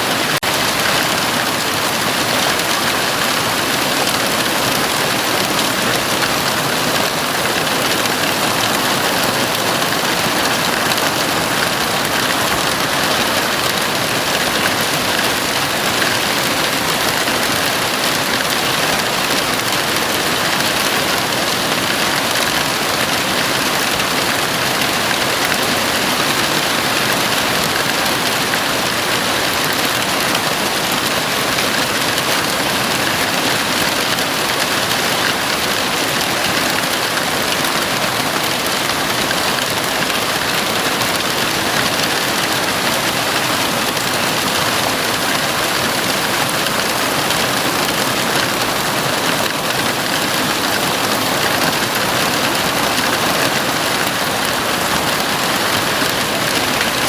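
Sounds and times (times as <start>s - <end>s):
heavy rain drumming on a roof: 0.0s - 57.0s.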